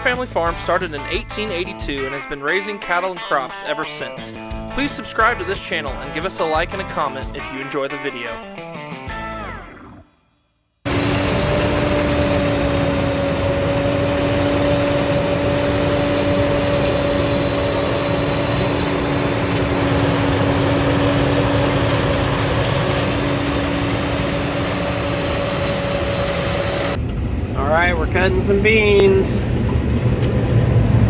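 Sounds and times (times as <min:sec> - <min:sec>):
faint high whine: 0:10.9 - 0:21.6
two-note hum: 0:10.9 - 0:27.2
combine harvester running: 0:10.9 - 0:31.0.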